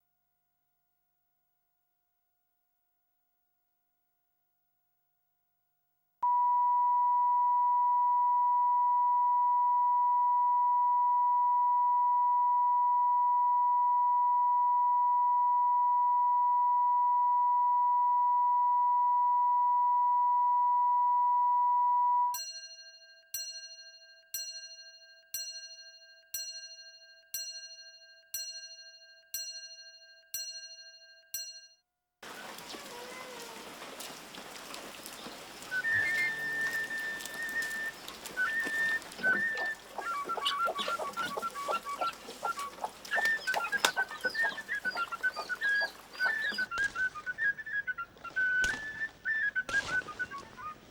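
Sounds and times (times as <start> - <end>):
chime-like ticks: 22.4 - 31.7.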